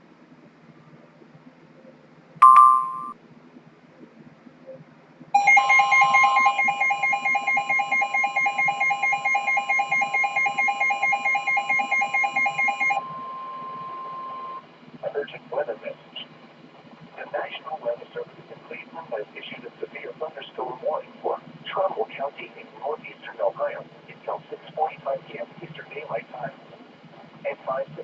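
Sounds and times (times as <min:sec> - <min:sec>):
loud beep: 0:02.4 - 0:03.1
rapid alarm beeping: 0:05.4 - 0:13.4.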